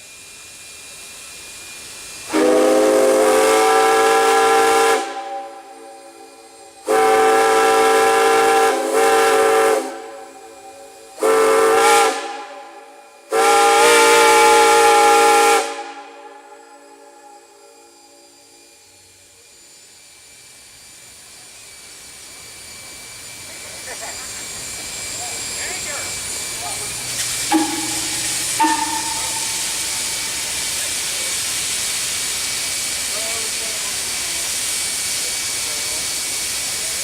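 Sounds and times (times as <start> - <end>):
faint steam hissing: 0.0 - 37.0
steam whistle blasts: 2.2 - 19.2, 27.4 - 32.8.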